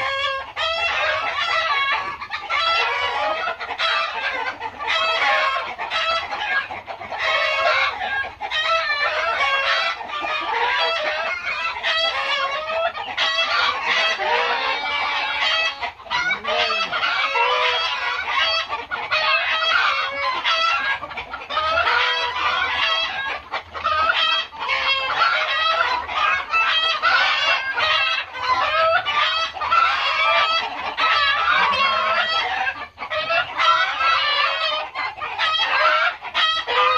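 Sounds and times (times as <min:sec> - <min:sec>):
chickens clucking: 0:00.0 - 0:36.9
rooster crowing: 0:13.4 - 0:20.5, 0:26.9 - 0:32.6.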